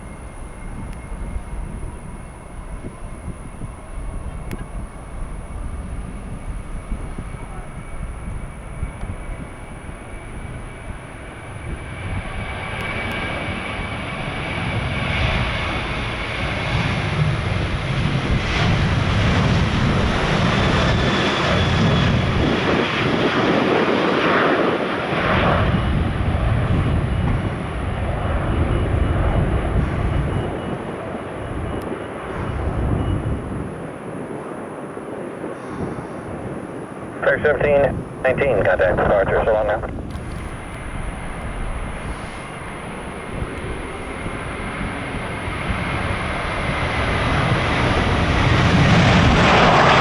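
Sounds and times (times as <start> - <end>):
jet engines at takeoff power: 0.0 - 50.0.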